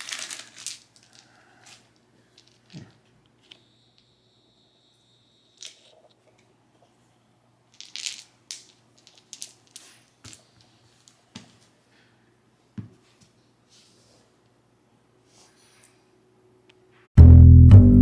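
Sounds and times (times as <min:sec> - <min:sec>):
packaging crinkling and tearing: 0:00.0 - 0:01.8.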